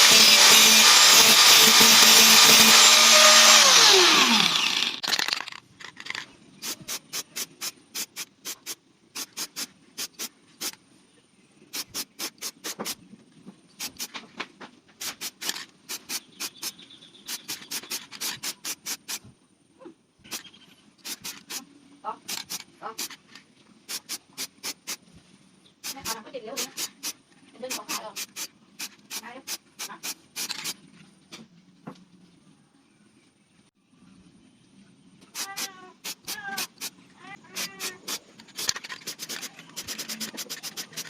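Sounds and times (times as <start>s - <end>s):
power tool winding down: 0.0s - 5.5s.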